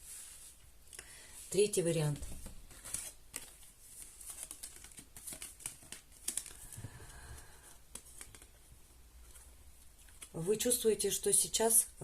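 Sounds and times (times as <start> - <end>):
cards tapping and rustling: 2.1 - 8.6.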